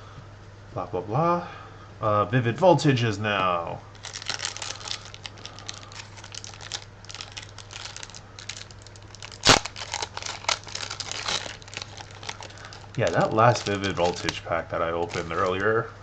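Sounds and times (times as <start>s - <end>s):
foil wrapper crinkling and tearing: 3.9s - 15.9s.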